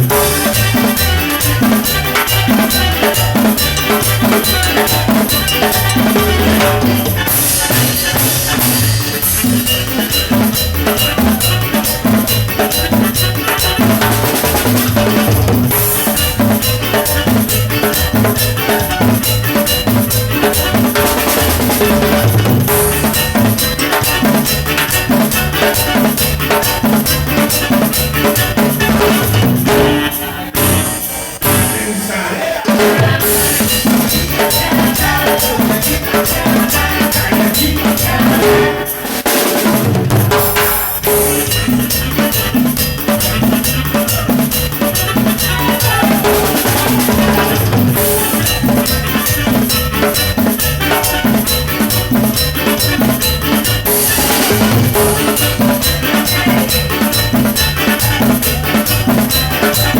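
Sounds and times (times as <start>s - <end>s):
bass: 0.0s - 32.0s, 32.7s - 39.0s, 39.6s - 59.9s
band music: 0.0s - 59.9s
drum kit: 0.0s - 59.9s
percussion: 0.0s - 59.9s.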